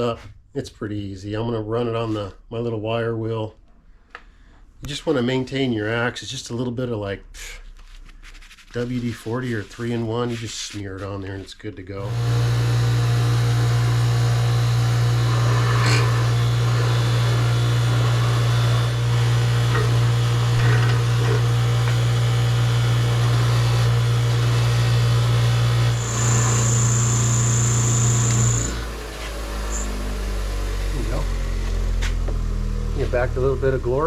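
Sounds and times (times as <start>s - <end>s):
motor winding down: 12.1s - 34.0s
wire wheel brushing metal: 12.2s - 29.9s
high whine: 25.8s - 30.2s.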